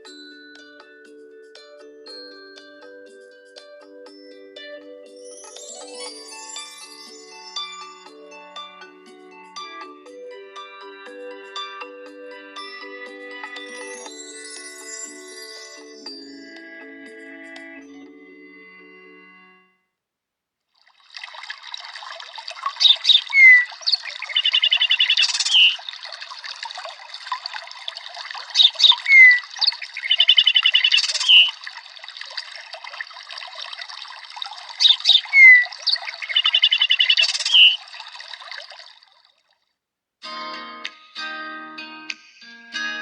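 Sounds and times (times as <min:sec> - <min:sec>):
running water trickling: 0:20.7 - 0:39.7
birdsong ringtone: 0:22.8 - 0:25.8, 0:28.6 - 0:31.5, 0:34.8 - 0:37.8.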